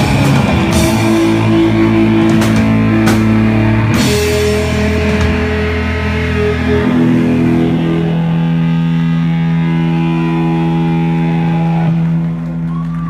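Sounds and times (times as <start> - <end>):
distorted electric guitar chord: 0.0 - 12.3.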